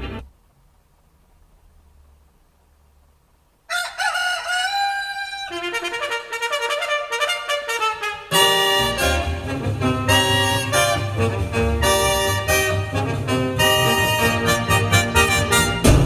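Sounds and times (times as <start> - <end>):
faint low hum: 0.0 - 16.0
horn-like music with bending notes: 5.2 - 16.0.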